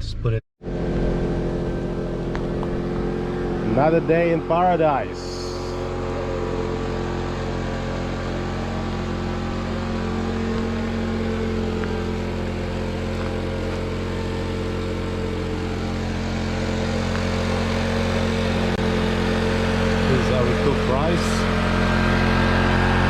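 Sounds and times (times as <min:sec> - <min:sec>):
engine humming steadily: 0:00.0 - 0:23.0.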